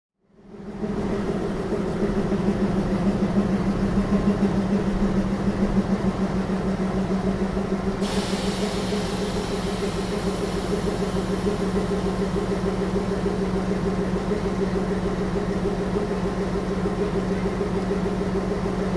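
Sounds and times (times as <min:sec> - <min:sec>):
electric locomotive humming: 0:00.4 - 0:18.9
high hiss: 0:08.0 - 0:12.6.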